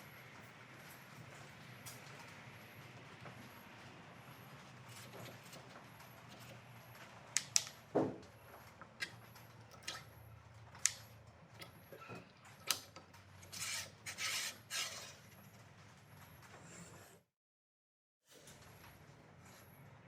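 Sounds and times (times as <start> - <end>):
rubbing or scraping: 13.4 - 15.5.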